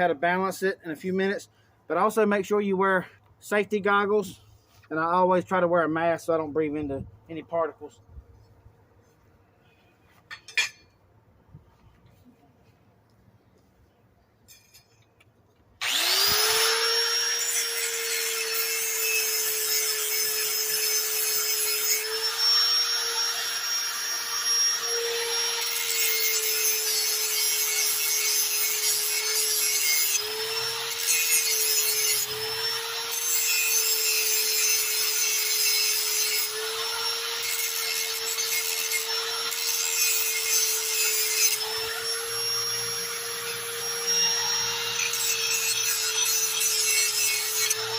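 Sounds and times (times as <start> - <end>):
electric grinder motor whine: 15.8 - 47.9
grinder rasping on steel blade: 15.8 - 47.9.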